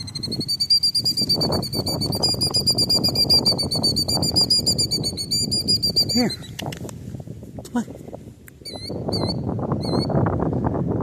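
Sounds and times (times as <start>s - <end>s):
bird trilling high notes: 0.0s - 6.5s.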